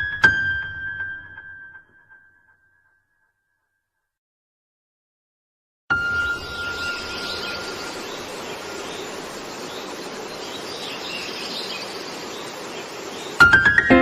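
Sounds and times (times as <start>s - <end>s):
steady outdoor hiss: 5.9s - 14.0s
birds chirping: 6.0s - 13.8s.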